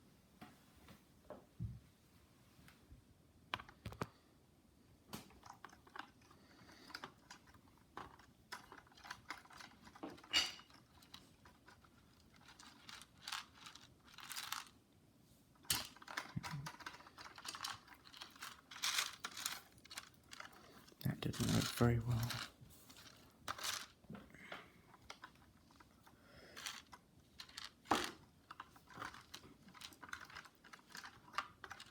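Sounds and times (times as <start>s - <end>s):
popcorn rustling crunches: 5.3s - 14.8s, 15.6s - 24.1s, 24.9s - 31.9s
plastic toy parts clicking: 6.9s - 14.7s, 15.7s - 20.6s, 26.6s - 31.9s.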